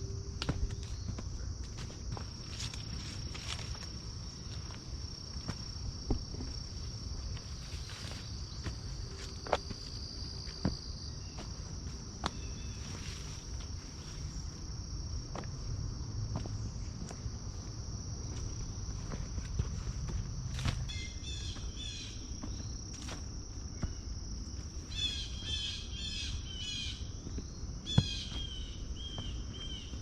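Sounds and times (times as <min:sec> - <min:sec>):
insect chorus trilling: 0:00.0 - 0:30.0
footsteps through undergrowth: 0:00.5 - 0:15.6, 0:16.3 - 0:24.9.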